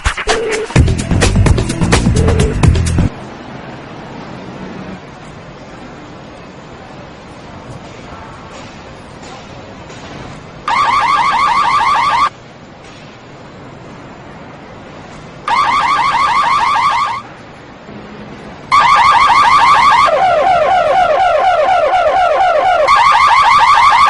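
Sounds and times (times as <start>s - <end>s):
car alarm siren: 10.7s - 12.3s, 15.5s - 17.3s, 18.7s - 24.0s.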